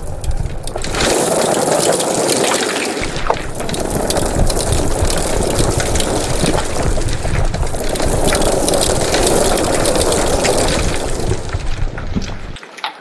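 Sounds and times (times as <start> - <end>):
crackles: 0.0 - 13.0
water rushing and gurgling: 0.0 - 13.0
low rumble: 3.0 - 12.6.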